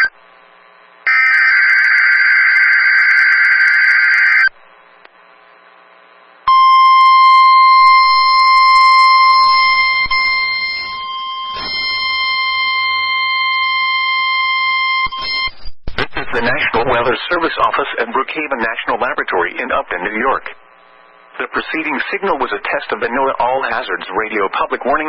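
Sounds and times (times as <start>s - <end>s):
steady high alarm tone: 1.1s - 4.5s, 6.5s - 15.6s.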